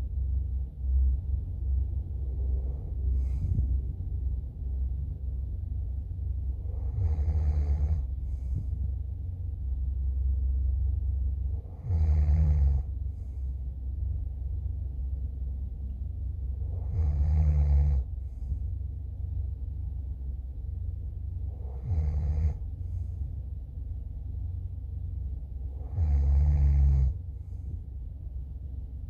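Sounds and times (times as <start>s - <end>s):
low rumble: 0.0s - 29.0s
person snoring: 21.6s - 22.6s, 25.8s - 27.2s.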